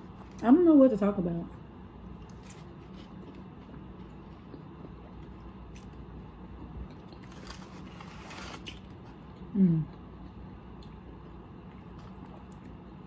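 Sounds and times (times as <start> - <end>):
low steady hum: 0.0 - 13.0
person chewing: 2.1 - 11.0.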